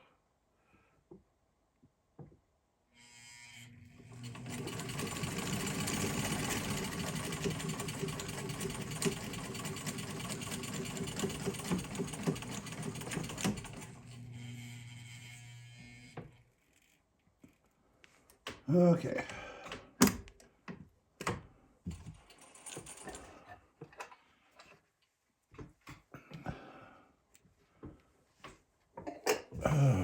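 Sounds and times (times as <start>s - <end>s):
sewing machine stitching: 3.4s - 16.1s.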